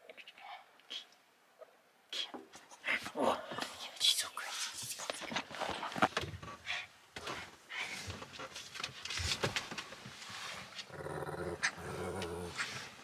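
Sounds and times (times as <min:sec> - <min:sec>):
dog growling: 0:10.9 - 0:12.9.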